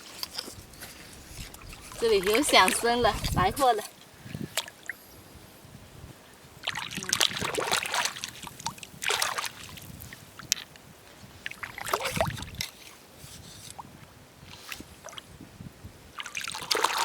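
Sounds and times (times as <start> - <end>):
wet scraping in sand: 0.0 - 3.9.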